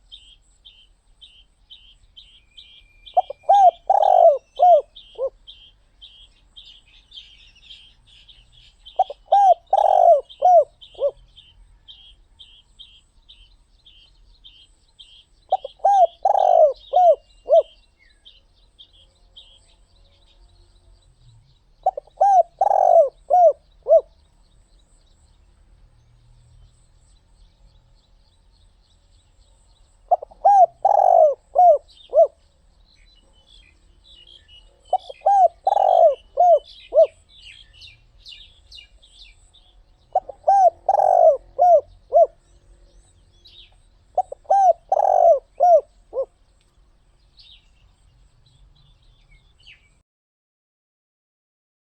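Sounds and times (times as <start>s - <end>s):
faint high bird chirping: 0.0s - 50.0s
dove cooing: 3.1s - 5.5s, 8.9s - 11.3s, 15.5s - 17.8s, 21.3s - 24.2s, 30.1s - 32.5s, 34.7s - 38.0s, 40.1s - 42.5s, 43.6s - 46.4s.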